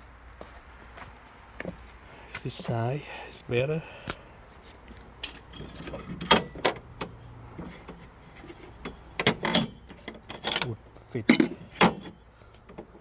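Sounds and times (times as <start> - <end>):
metal clinks and knocks: 5.1 - 12.9.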